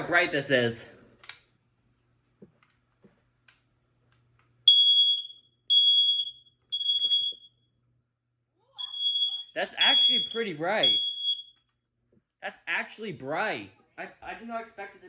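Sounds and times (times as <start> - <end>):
smoke alarm beeping: 4.7 - 7.7, 8.8 - 11.7.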